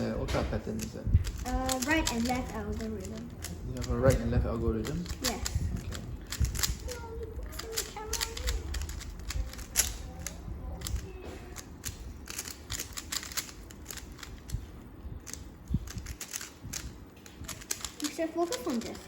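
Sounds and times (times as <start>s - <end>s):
puzzle cubes clicking: 0.8s - 6.9s, 11.6s - 14.6s, 15.2s - 19.0s.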